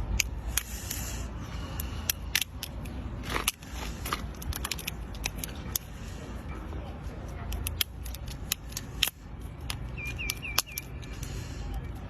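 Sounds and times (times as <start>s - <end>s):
lobster shell cracking: 1.8s - 5.9s.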